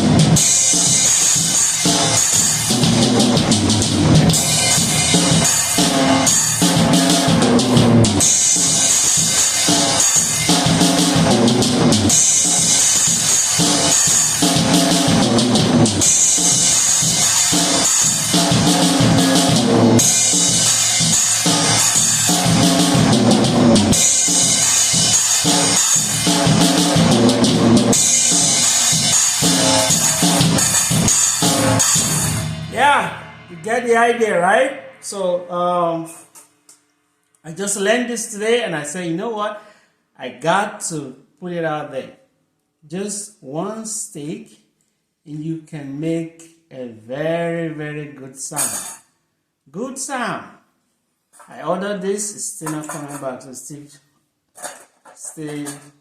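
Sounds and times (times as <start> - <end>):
bass drum and snare: 0.0 - 33.8.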